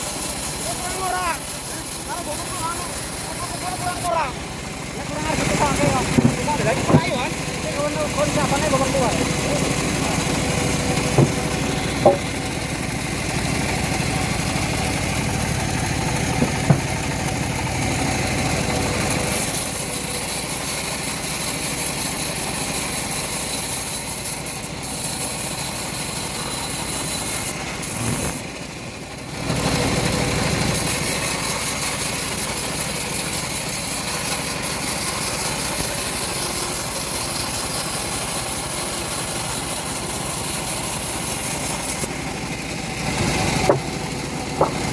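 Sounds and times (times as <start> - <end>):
sawmill engine running: 0.0 - 44.9
sharp knocks: 6.0 - 7.3, 11.0 - 12.5, 16.3 - 17.4, 43.6 - 43.9, 44.5 - 44.9.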